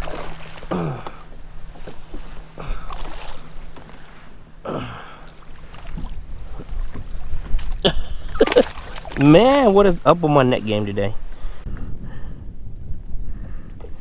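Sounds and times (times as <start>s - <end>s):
water splashing around a kayak: 0.0s - 10.8s
person grunting: 0.7s - 1.2s, 4.6s - 5.2s.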